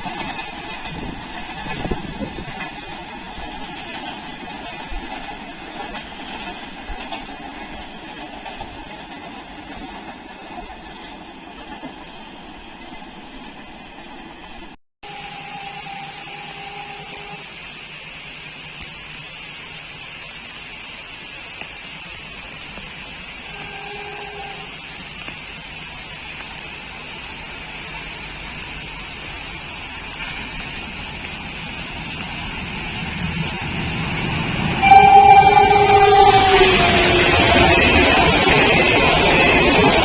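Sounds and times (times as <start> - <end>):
train rumble: 0.0 - 40.0
train horn blasts: 15.0 - 17.5, 23.5 - 24.8, 34.8 - 38.4
steady rain hiss: 15.0 - 40.0.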